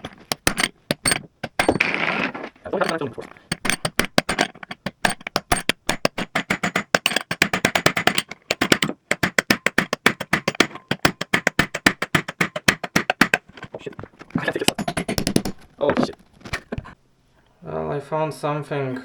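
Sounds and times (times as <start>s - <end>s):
rapid hammer strikes on metal: 0.0s - 1.9s, 2.8s - 15.7s.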